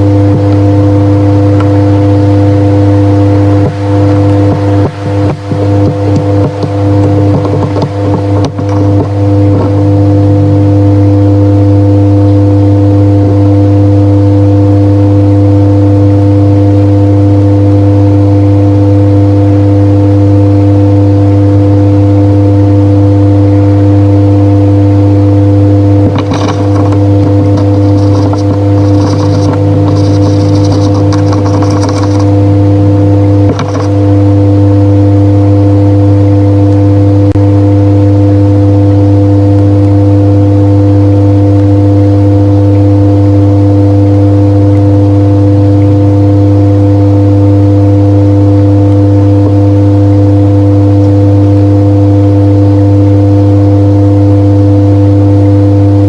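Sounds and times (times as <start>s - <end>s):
electrical hum: 0.0s - 56.0s
scratchy rustling: 26.1s - 32.5s, 33.5s - 34.0s.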